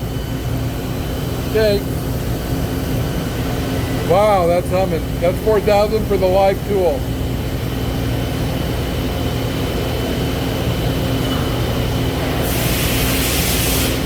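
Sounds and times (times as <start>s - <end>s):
lathe humming with high whine: 0.0s - 14.0s
burst of hiss: 12.4s - 14.0s.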